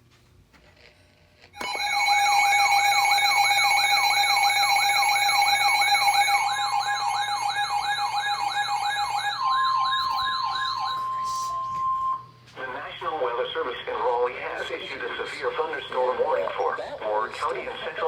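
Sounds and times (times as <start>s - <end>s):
electronic siren-like alert tone: 1.6s - 12.2s
steady held tones: 1.6s - 12.5s.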